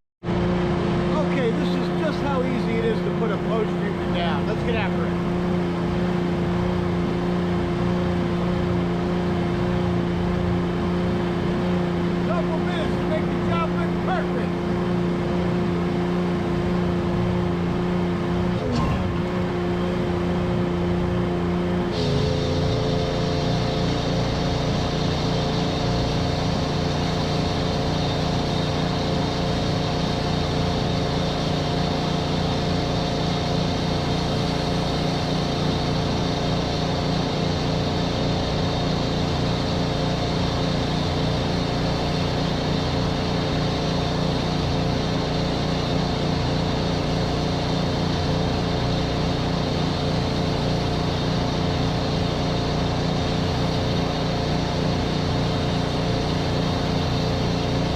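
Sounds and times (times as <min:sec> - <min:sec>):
pressure washer engine running: 0:00.2 - 0:57.9.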